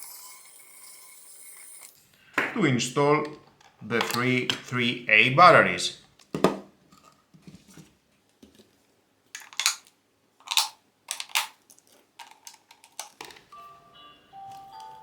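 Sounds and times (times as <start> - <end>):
batteries clicking into compartment: 3.4 - 4.7, 9.4 - 13.5.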